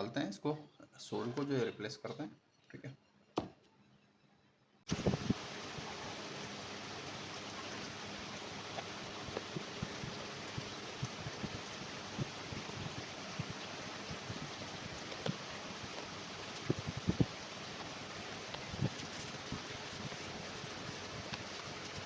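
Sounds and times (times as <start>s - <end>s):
steady hiss: 4.9s - 22.0s.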